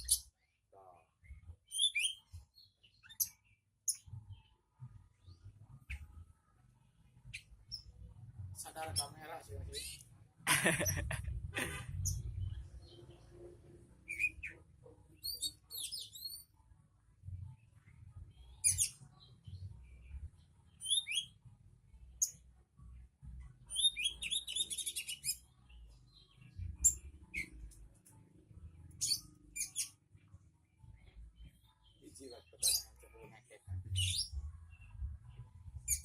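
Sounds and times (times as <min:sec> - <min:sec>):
songbird chirping and whistling: 0:01.2 - 0:04.1, 0:14.0 - 0:14.6, 0:15.2 - 0:16.5, 0:18.5 - 0:20.1, 0:20.7 - 0:21.4, 0:23.7 - 0:27.7, 0:29.0 - 0:30.0, 0:31.0 - 0:33.0, 0:33.9 - 0:36.0.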